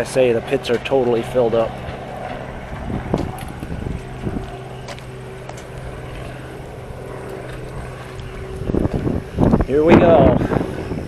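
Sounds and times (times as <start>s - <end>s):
engine droning: 0.0s - 11.0s.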